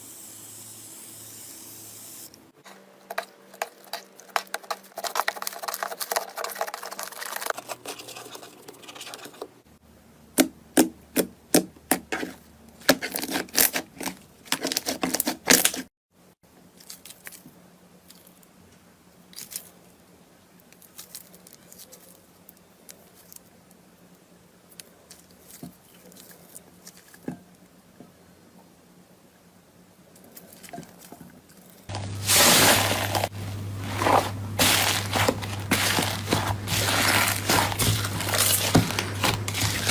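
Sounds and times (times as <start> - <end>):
sticky crackles and ticks: 3.1 - 9.4, 34.0 - 39.9
slime crackling: 31.9 - 39.9.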